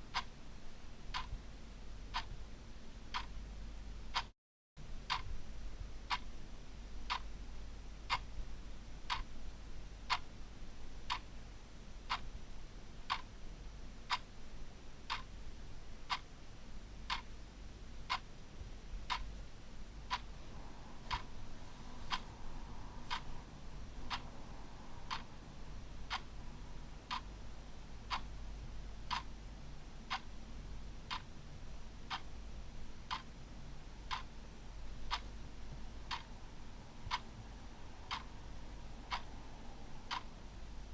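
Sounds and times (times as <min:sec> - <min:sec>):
faint low hum: 0:00.0 - 0:40.9
clock ticking: 0:01.1 - 0:01.4, 0:02.1 - 0:02.4, 0:03.1 - 0:03.3, 0:04.1 - 0:04.3, 0:05.1 - 0:05.4, 0:07.1 - 0:07.3, 0:08.1 - 0:08.3, 0:09.1 - 0:09.3, 0:13.1 - 0:13.3, 0:15.1 - 0:15.3, 0:17.1 - 0:17.3, 0:20.1 - 0:20.3, 0:21.0 - 0:28.4, 0:29.1 - 0:29.3, 0:30.1 - 0:30.3, 0:31.1 - 0:31.3, 0:32.1 - 0:32.3, 0:33.1 - 0:33.3, 0:34.1 - 0:34.3, 0:35.1 - 0:39.4, 0:40.1 - 0:40.4.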